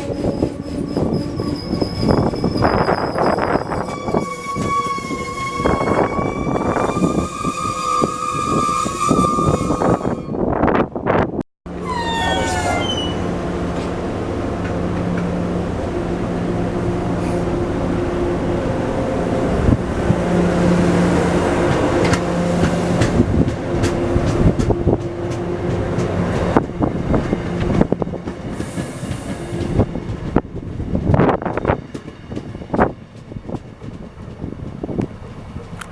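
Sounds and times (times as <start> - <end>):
train rumble: 0.0 - 35.9
wheels clicking over rail joints: 21.7 - 26.8.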